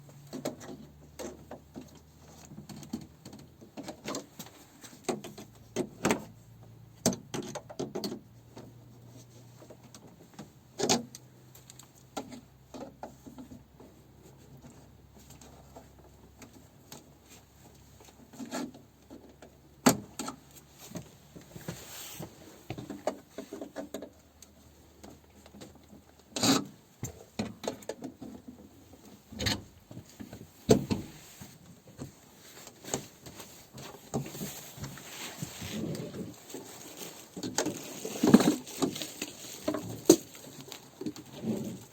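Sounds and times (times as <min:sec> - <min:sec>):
rubbing: 0:20.8 - 0:23.7, 0:32.4 - 0:41.9.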